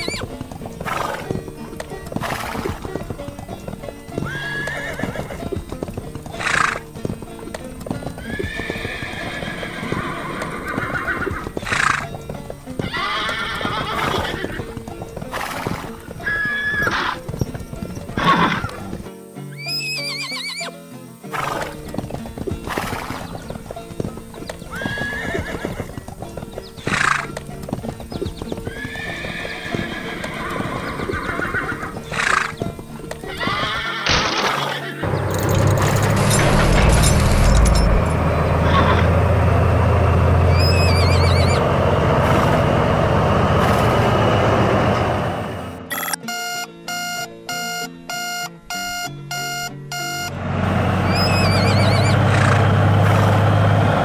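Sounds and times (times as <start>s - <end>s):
horse whinnying: 0.0s - 39.4s, 40.4s - 42.7s, 43.5s - 44.2s, 50.7s - 54.0s
background music: 0.0s - 41.6s, 44.7s - 54.0s
clip-clop hoofbeats: 0.0s - 54.0s
wavering high whistle: 51.1s - 52.2s.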